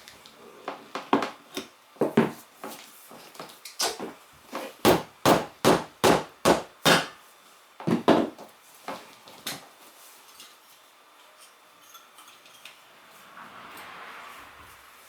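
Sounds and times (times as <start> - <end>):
tools knocking on tyre rim: 4.9 - 7.2.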